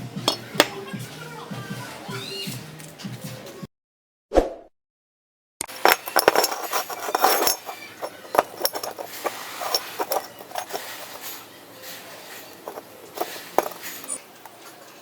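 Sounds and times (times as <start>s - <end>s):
steel pieces clinking and knocking: 0.3s - 0.7s, 5.7s - 15.0s.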